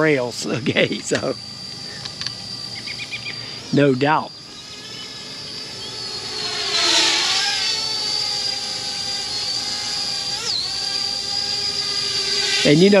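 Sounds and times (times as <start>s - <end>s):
drone propellers whining: 0.0s - 13.0s.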